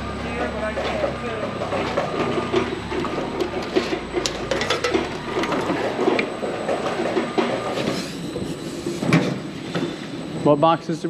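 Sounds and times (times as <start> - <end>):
hard objects rattling and clicking: 0.4 - 7.6.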